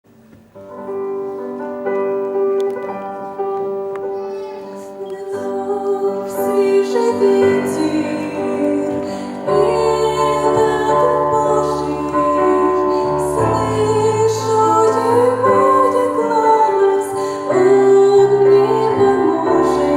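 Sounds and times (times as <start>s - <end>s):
slow held chords with melody: 5.0s - 19.9s.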